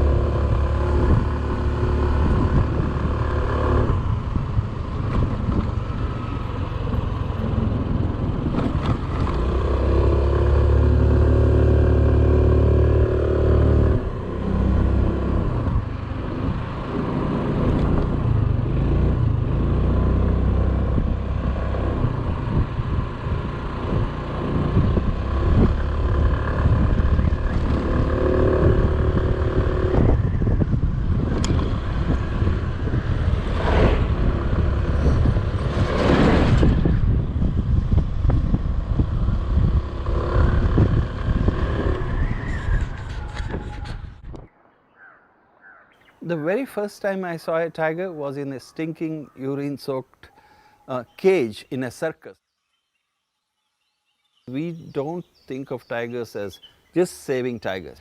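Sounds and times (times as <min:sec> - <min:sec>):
road and wind noise: 0:00.0 - 0:58.0
motorcycle engine running: 0:12.0 - 0:35.9, 0:36.7 - 0:42.2.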